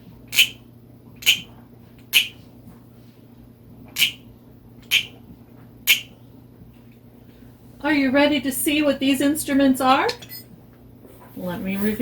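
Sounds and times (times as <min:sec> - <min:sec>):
wooden frog guiro croaking: 0:02.1 - 0:02.4, 0:04.0 - 0:04.2, 0:04.8 - 0:05.2, 0:05.9 - 0:06.1.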